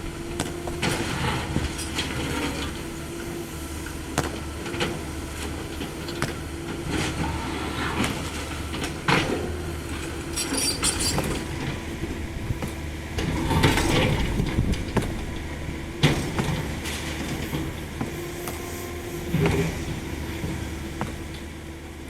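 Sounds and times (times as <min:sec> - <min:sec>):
diesel engine running: 0:00.0 - 0:22.0
excavator bucket knocking: 0:12.5 - 0:16.8
bucket scraping through rubble: 0:13.2 - 0:15.4.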